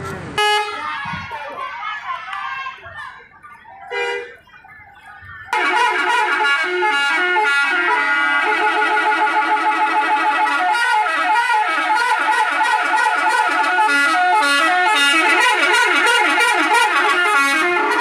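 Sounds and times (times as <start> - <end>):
bus air horn playing tune: 0.4 - 0.9, 3.9 - 4.4, 5.5 - 18.0.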